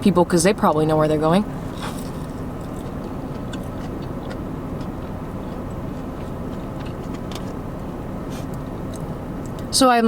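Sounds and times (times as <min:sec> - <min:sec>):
low background rumble: 0:00.0 - 0:10.0
chewing: 0:01.7 - 0:07.6
mouth smacks and clicks: 0:02.7 - 0:07.6.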